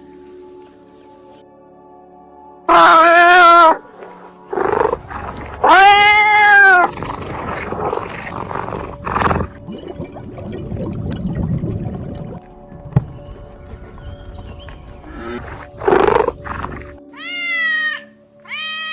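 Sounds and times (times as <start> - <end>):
animal loud pitched call: 2.7 - 3.8, 5.6 - 8.1
animal grunting: 4.1 - 9.6, 13.0 - 17.0.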